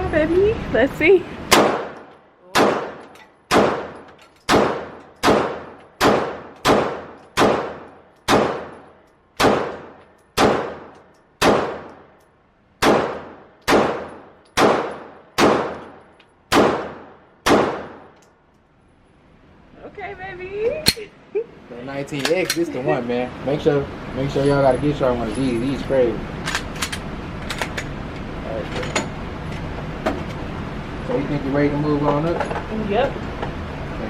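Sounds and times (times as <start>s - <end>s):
pistol shots with echo: 1.5s - 8.8s, 9.4s - 12.0s, 12.8s - 18.2s.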